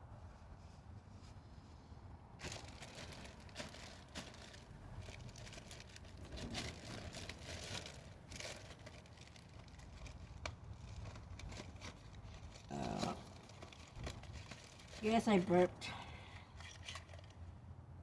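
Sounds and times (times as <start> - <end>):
hands rustling engine parts: 0.3 - 15.6, 16.2 - 17.6.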